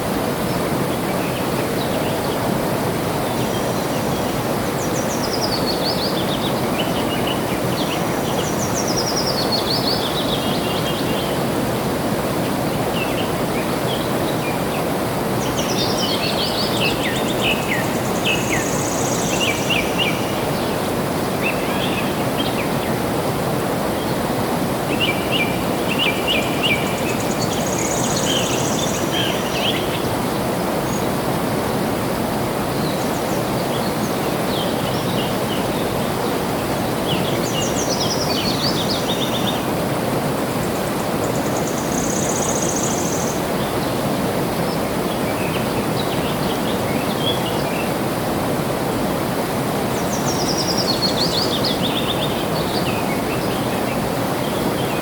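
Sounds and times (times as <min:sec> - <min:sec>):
flowing water rushing: 0:00.0 - 0:55.0
small birds chirping and trilling: 0:32.6 - 0:39.8, 0:49.9 - 0:55.0.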